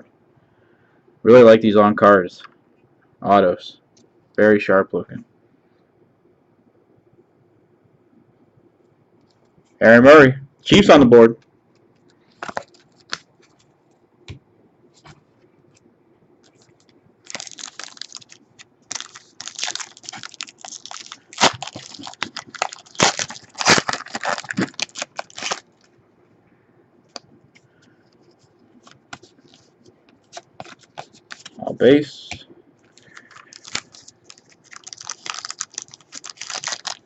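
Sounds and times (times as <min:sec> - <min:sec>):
plastic wrapper tearing and crinkling: 0:12.4 - 0:13.6, 0:16.5 - 0:25.9, 0:28.8 - 0:31.6, 0:33.0 - 0:37.0.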